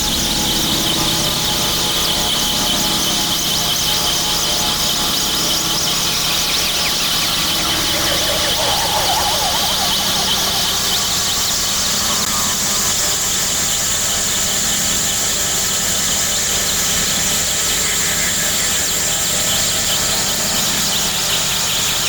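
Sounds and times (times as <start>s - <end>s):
high whistling tone: 0.1s - 13.0s
low hum: 3.8s - 12.6s.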